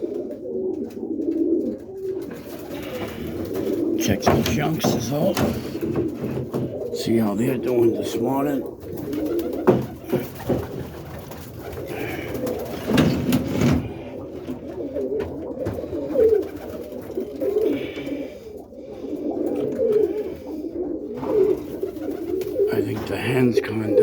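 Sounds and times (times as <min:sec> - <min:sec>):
pigeons cooing: 0:00.0 - 0:24.0
sharp knocks: 0:04.0 - 0:06.8, 0:09.6 - 0:11.2.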